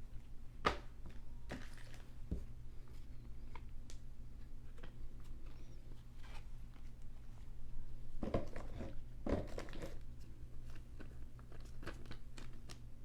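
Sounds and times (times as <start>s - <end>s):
cards rustling in plastic sleeves: 10.6s - 12.9s.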